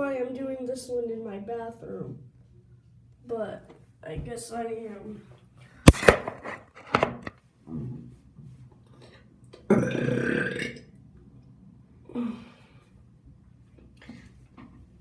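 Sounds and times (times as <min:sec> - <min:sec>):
sharp click: 0:05.9 - 0:07.3
person burping: 0:09.7 - 0:10.8.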